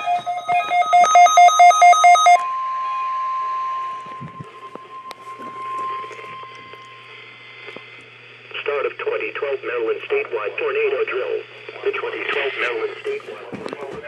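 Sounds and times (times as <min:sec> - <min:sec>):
steady weather radio alert tone: 0:00.0 - 0:14.0
radio hiss: 0:06.7 - 0:14.0.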